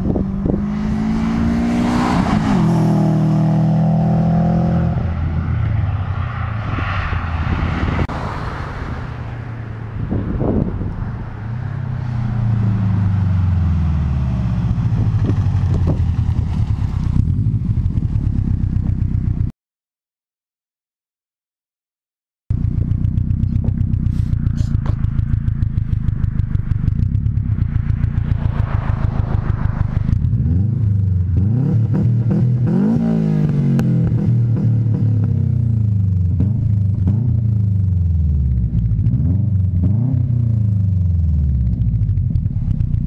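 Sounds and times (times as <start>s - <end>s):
car engine and exhaust: 0.0s - 19.5s, 22.5s - 43.0s.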